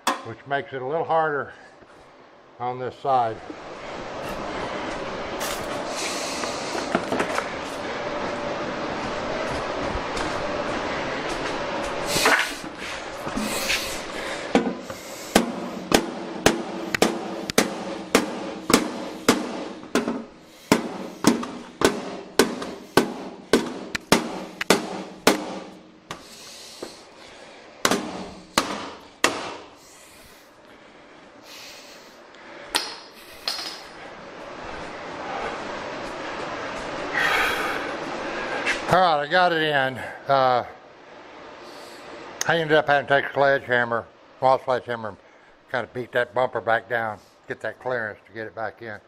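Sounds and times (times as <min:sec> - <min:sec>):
sledgehammer blows on metal: 0:14.5 - 0:26.3.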